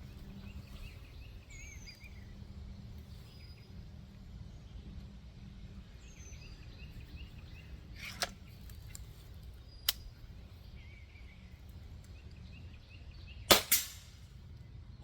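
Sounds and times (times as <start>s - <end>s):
birds chirping: 0.0s - 13.7s
air rifle clicks: 9.8s - 10.2s.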